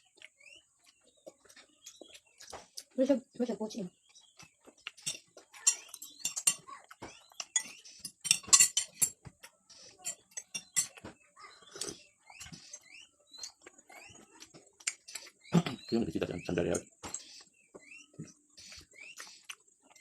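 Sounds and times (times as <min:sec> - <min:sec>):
cutlery clinking on a plate: 0:05.0 - 0:06.7, 0:07.4 - 0:09.3, 0:10.0 - 0:11.1.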